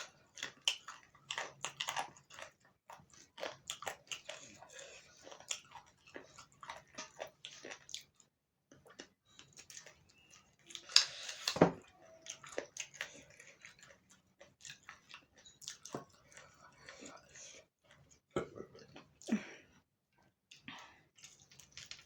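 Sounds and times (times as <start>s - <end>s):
chewing mouth sounds: 0.0s - 11.6s, 12.2s - 18.2s.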